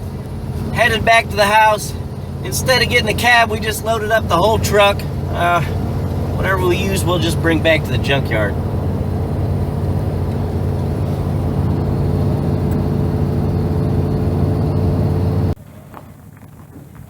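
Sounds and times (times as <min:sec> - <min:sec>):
vehicle engine and road noise: 0:00.0 - 0:17.0.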